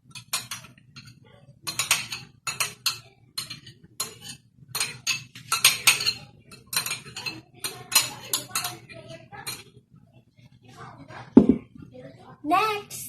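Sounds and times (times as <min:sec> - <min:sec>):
spoon scraping mixing bowl: 0:00.1 - 0:09.6.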